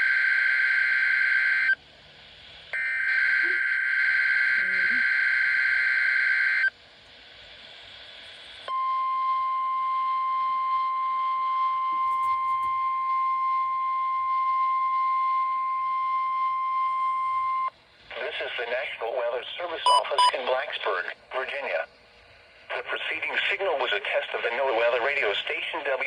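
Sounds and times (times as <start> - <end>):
faint static: 14.6 - 26.0
steady high alarm tone: 19.9 - 20.3.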